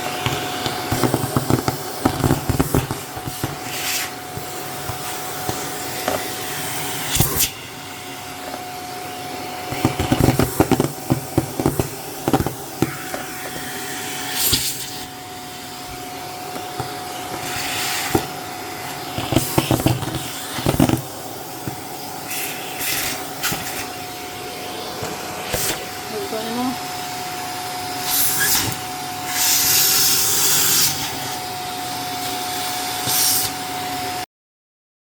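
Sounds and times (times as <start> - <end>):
packing peanuts rattling up a hose: 0.0 - 6.5, 16.4 - 24.0
vacuum cleaner running: 0.0 - 34.3.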